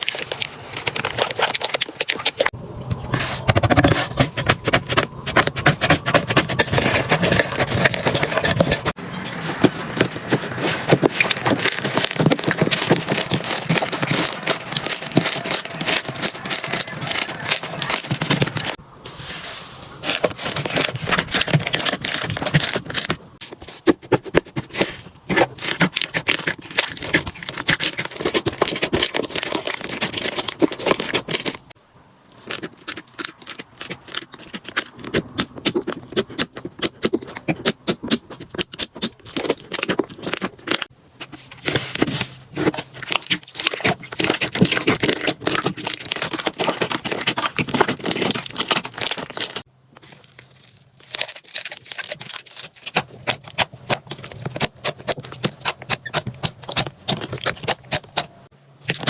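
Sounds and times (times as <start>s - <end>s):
slime crackling and popping: 43.0s - 58.2s.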